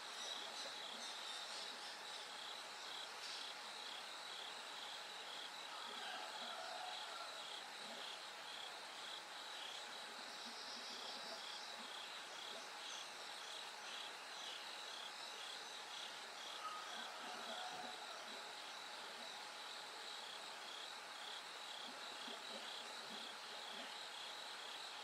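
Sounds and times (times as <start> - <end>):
crickets chirping: 0.0 - 25.0
insects trilling: 0.0 - 25.0.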